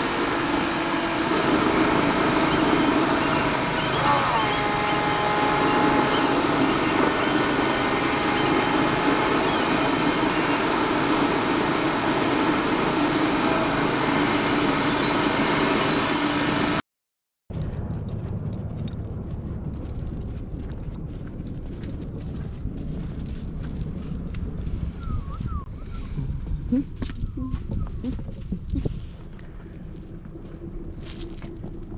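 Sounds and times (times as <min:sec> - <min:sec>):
held tones: 0:00.0 - 0:16.8
vehicle engine running: 0:00.0 - 0:16.8, 0:17.5 - 0:25.7
low dull rumble: 0:17.5 - 0:31.9.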